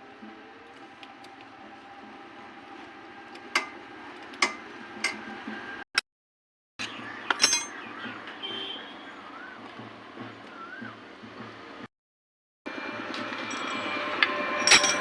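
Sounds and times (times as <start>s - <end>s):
metal tools clinking on metal: 6.8s - 7.9s, 13.0s - 15.0s.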